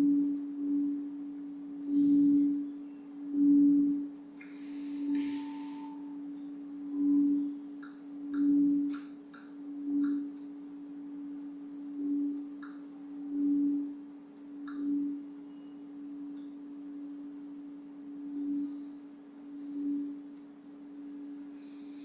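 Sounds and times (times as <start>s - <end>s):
metal pipe ringing low tone: 5.0s - 7.7s.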